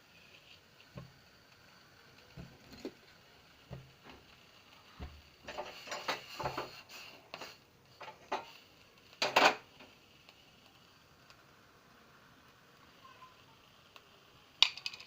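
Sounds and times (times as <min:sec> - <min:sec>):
kitchen utensils clinking and scraping: 0:05.4 - 0:06.8, 0:07.4 - 0:08.6, 0:09.2 - 0:09.6.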